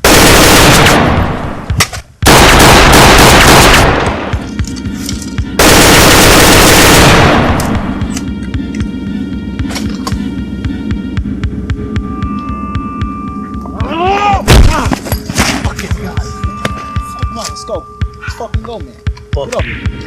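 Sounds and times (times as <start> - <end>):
rapid gunfire bursts: 0.0 - 1.3, 2.2 - 4.2, 5.6 - 7.6
background music: 0.8 - 20.0.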